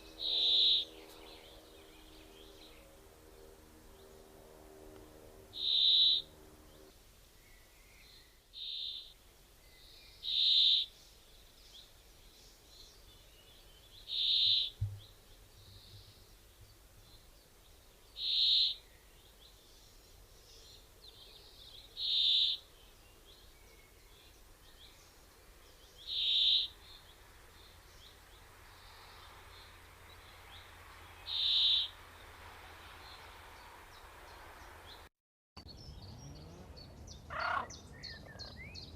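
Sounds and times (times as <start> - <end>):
faint background hum: 0.0 - 35.0
bird high single-note call: 0.2 - 1.2, 5.6 - 6.3, 8.6 - 9.1, 14.1 - 14.8, 18.2 - 18.8, 22.0 - 22.6, 31.3 - 31.9.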